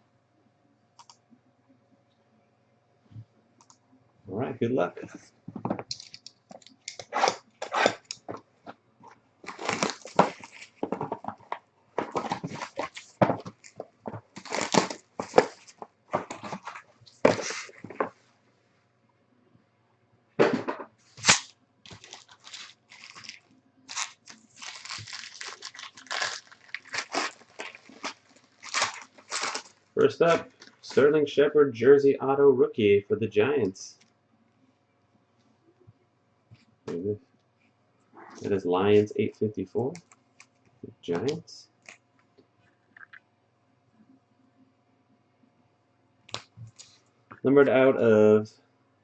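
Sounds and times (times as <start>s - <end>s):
packaging tearing and crinkling: 5.9s - 8.3s, 9.4s - 18.1s, 21.2s - 30.9s.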